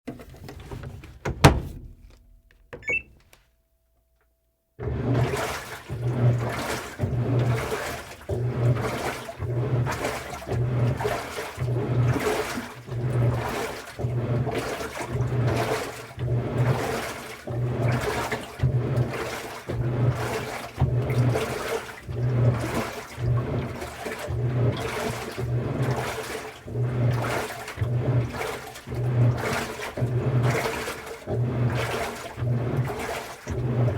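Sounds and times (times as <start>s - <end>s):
washing machine drum churning: 0.1s - 2.1s, 4.8s - 33.9s
washing machine thunk: 0.5s - 3.1s
washing machine clicks: 1.2s - 3.3s
short beep: 2.8s - 3.1s.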